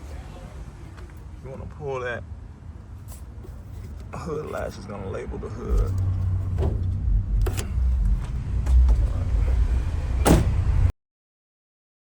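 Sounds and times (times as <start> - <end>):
low rumble: 5.3 - 10.9
hood release latch clicks and clunk: 5.7 - 7.8, 10.2 - 10.6.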